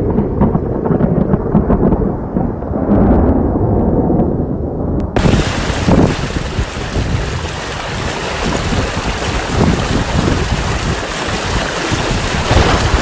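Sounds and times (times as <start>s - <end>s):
wind buffeting microphone: 0.0s - 13.0s
heavy rain rushing: 5.2s - 13.0s.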